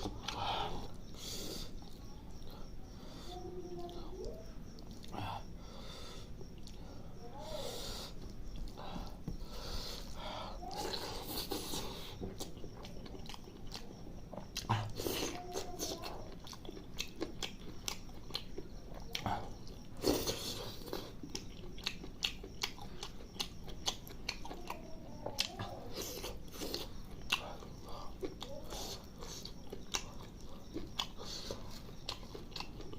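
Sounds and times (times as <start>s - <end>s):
chewing and mouth smacks: 10.8s - 32.9s.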